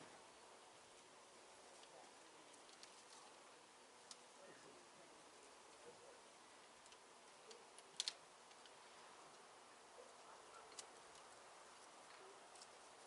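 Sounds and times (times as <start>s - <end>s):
faint sharp clicks: 6.8s - 9.4s.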